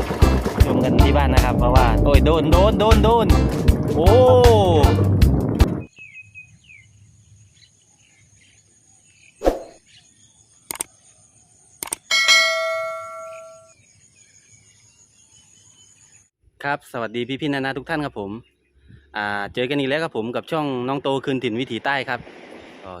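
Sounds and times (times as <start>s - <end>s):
faint bird chirps: 5.9s - 16.3s
knocks and clicks: 11.8s - 13.6s
struck metal ringing: 12.1s - 13.7s.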